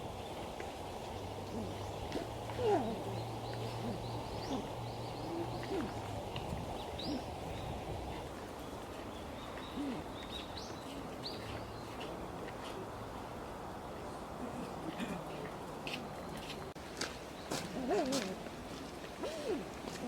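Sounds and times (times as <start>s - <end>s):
small birds chirping: 0.1s - 12.8s.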